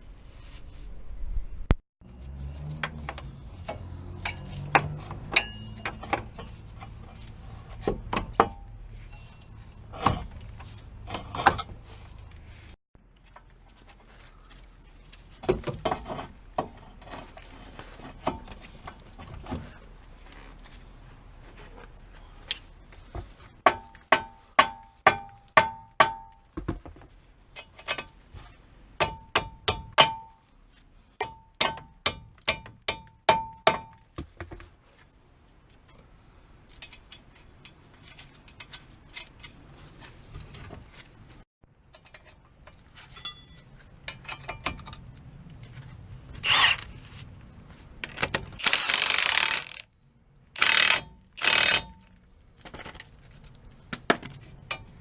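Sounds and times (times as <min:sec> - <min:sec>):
ringing metallic knocks: 0:04.2 - 0:06.4, 0:23.7 - 0:26.4, 0:29.0 - 0:30.4, 0:31.2 - 0:34.0, 0:43.2 - 0:45.0
tools and parts clicking: 0:36.7 - 0:39.7, 0:41.9 - 0:45.2, 0:48.0 - 0:49.9, 0:50.6 - 0:52.2.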